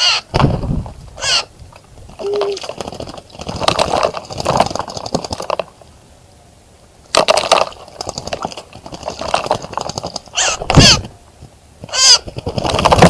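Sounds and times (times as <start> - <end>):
bird splashing in water: 2.4 - 5.7.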